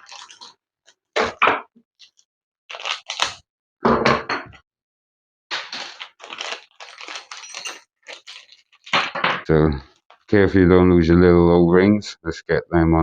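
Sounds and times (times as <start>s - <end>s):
plastic packets crinkling: 0.0s - 1.4s, 2.0s - 3.4s, 5.5s - 9.2s, 9.8s - 10.4s.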